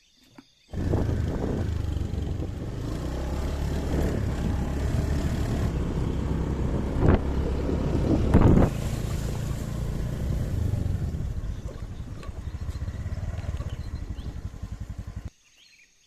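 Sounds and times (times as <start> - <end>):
wind rushing: 0.7 - 13.1
motorcycle engine running: 0.7 - 15.3.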